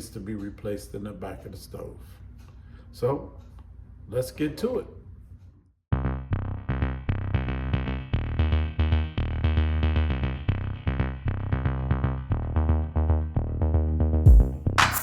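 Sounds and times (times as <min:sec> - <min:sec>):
drum machine beat: 0:14.3 - 0:15.0.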